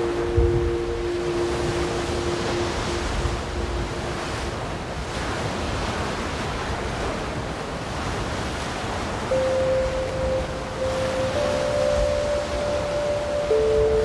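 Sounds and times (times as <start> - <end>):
held musical tone: 0.0 - 4.9, 9.3 - 14.0
ocean waves washing on shore: 0.0 - 14.0.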